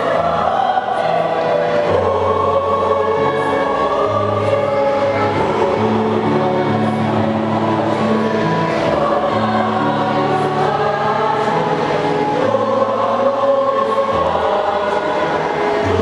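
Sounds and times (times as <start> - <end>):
choir singing in harmony: 0.0 - 16.0.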